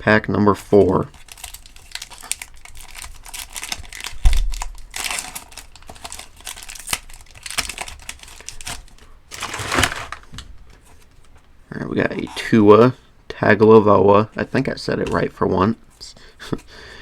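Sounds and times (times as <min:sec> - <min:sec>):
wrapper tearing and crinkling: 0:00.7 - 0:10.4.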